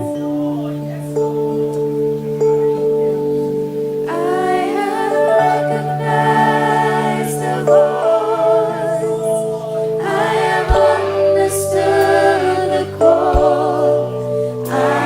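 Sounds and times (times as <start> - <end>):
held accompaniment chords: 0.0 - 15.0
women singing gospel in harmony: 4.0 - 15.0.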